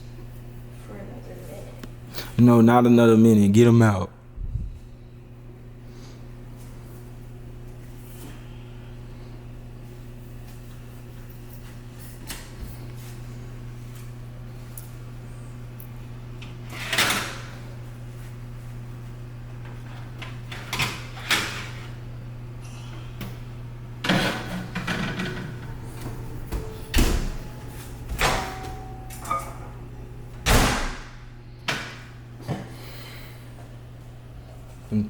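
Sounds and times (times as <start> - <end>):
steady low hum: 0.0 - 35.0
oven door clunking: 24.0 - 29.8.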